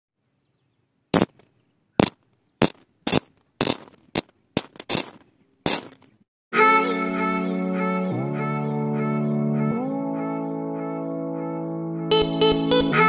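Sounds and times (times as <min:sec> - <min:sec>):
electric arc welding zaps: 0:01.2 - 0:06.1.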